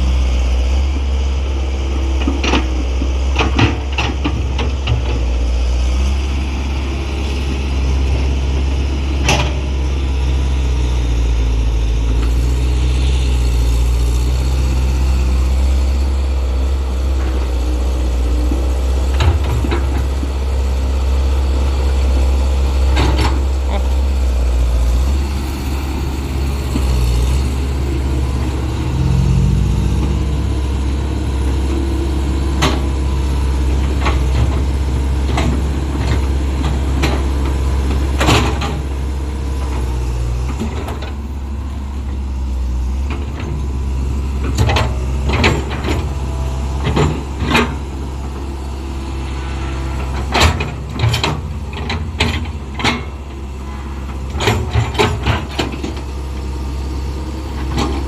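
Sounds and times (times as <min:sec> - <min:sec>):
excavator diesel engine revving: 0:00.0 - 0:58.0
metal clanks and knocks: 0:50.1 - 0:53.2.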